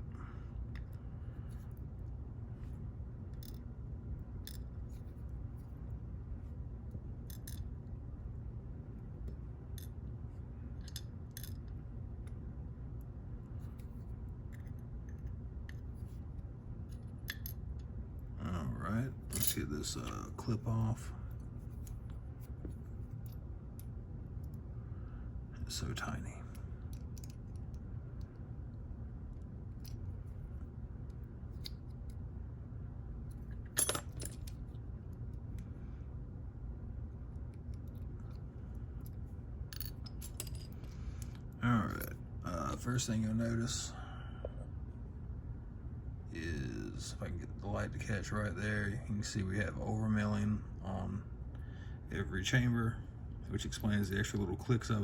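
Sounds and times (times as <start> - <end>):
low steady hum: 0.0 - 55.0
light clicks of metal parts: 0.6 - 2.2, 3.3 - 6.0, 6.8 - 7.9, 10.7 - 12.4, 13.0 - 18.3, 19.2 - 24.6, 25.7 - 32.2, 33.2 - 35.8, 37.3 - 43.1
metal lock parts clicking: 7.2 - 7.7, 10.8 - 11.8, 17.0 - 17.6, 19.2 - 20.2, 26.9 - 27.8, 33.3 - 34.6, 39.0 - 41.4
metallic clink: 19.2 - 19.7, 33.8 - 34.5, 39.7 - 40.8.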